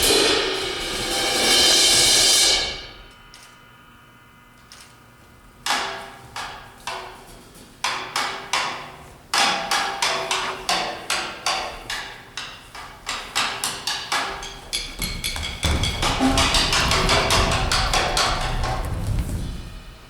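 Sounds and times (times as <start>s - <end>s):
struck percussion hits: 12.8s - 20.0s.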